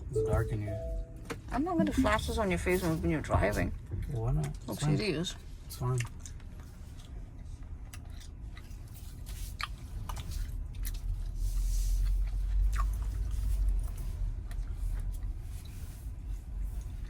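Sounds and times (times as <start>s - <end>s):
person chewing gum: 12.0s - 13.4s.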